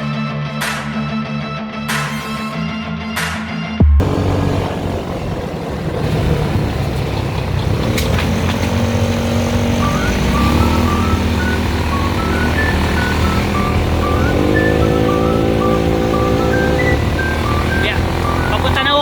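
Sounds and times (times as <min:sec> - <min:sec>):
background music: 0:00.0 - 0:05.9, 0:08.7 - 0:19.0
vehicle engine running: 0:03.8 - 0:19.0.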